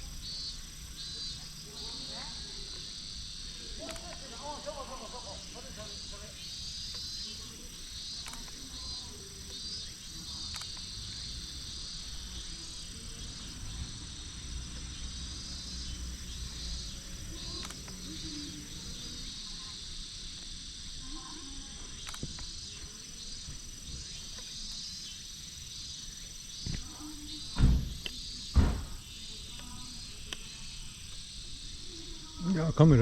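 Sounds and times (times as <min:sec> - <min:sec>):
crickets chirping in trills: 0:00.0 - 0:33.0
high-pitched insect drone: 0:00.0 - 0:33.0
faint clicks: 0:00.1 - 0:04.8, 0:06.4 - 0:11.3, 0:17.3 - 0:18.4, 0:21.9 - 0:24.8, 0:26.6 - 0:31.9.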